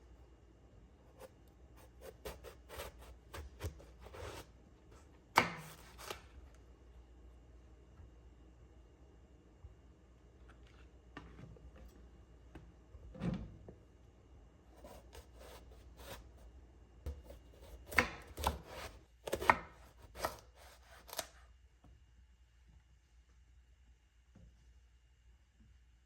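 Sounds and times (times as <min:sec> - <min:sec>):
knife chopping on cutting board: 0:01.1 - 0:04.5, 0:05.4 - 0:06.2, 0:14.8 - 0:16.2, 0:17.1 - 0:21.3.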